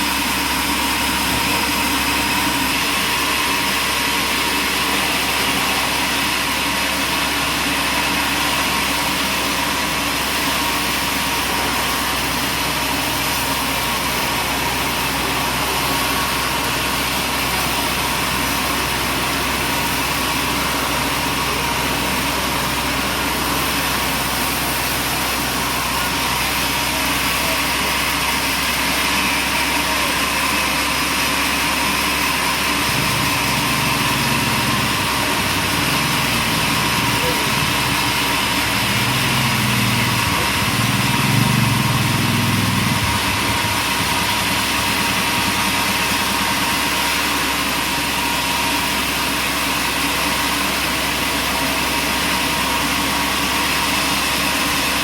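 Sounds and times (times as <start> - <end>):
machinery droning: 0.0 - 55.0.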